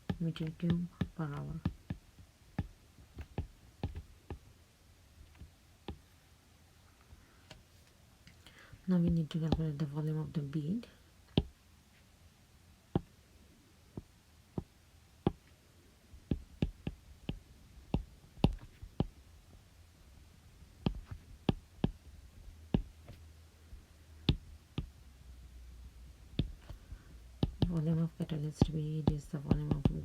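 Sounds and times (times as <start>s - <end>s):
faint low hum: 0.0s - 30.0s.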